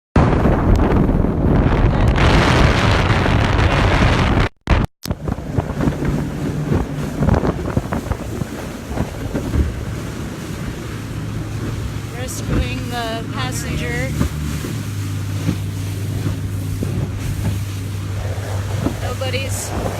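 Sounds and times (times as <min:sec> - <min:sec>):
wind buffeting microphone: 0:00.2 - 0:04.5, 0:05.1 - 0:19.9
water rushing past hull: 0:00.2 - 0:19.9
boat motor humming: 0:05.0 - 0:19.9.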